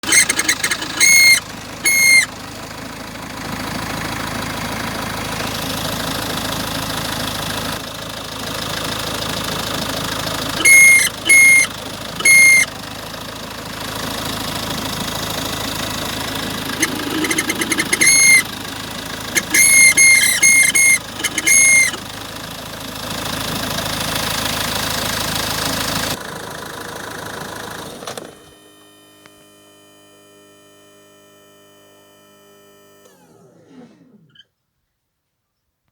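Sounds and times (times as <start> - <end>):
diesel engine idling: 0.0 - 28.0
high-pitched chirps: 0.1 - 2.3, 10.6 - 12.7, 16.8 - 18.5, 19.4 - 22.0.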